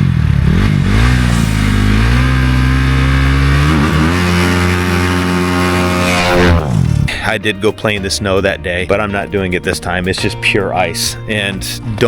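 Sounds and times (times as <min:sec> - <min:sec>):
dirt bike engine revving: 0:00.0 - 0:07.3.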